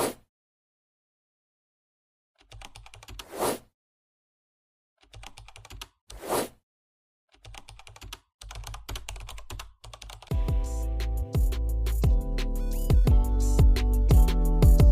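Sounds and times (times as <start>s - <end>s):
keyboard typing clicks: 5.0s - 6.0s
music with a beat: 10.3s - 14.9s.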